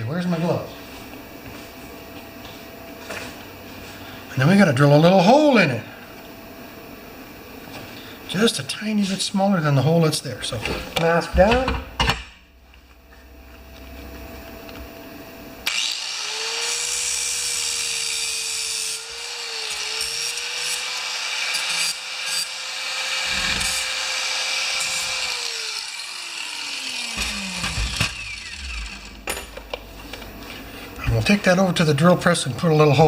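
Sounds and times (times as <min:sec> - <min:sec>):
cut-off tool cutting: 0:15.6 - 0:29.3.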